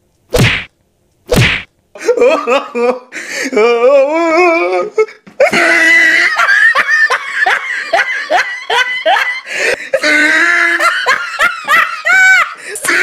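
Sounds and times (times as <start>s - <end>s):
person laughing hard: 2.0s - 3.8s, 5.4s - 13.0s.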